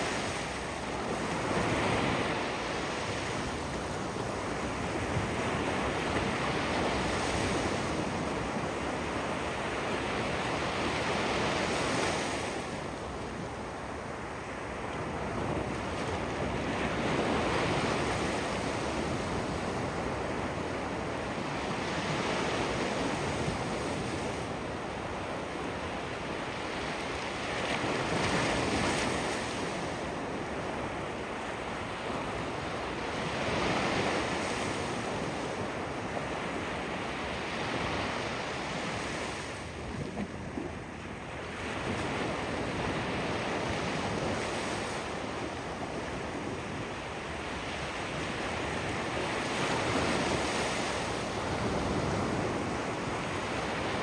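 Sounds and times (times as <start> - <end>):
ocean waves breaking on shore: 0.0 - 54.0.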